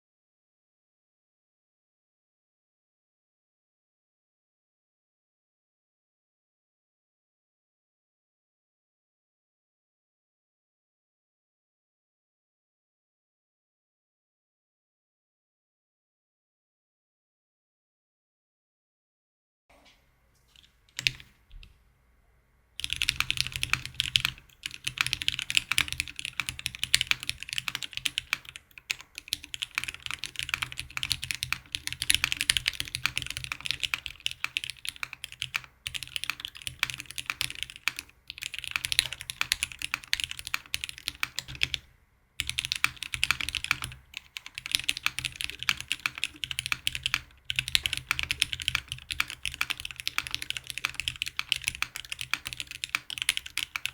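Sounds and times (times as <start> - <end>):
mechanical keyboard typing: 21.0 - 21.3, 22.8 - 41.8, 42.4 - 53.9.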